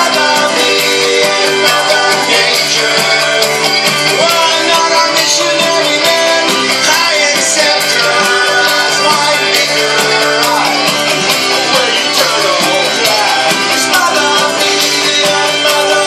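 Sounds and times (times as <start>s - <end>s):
rock band with electric guitar: 0.0s - 16.0s
sliding guitar notes: 0.0s - 16.0s.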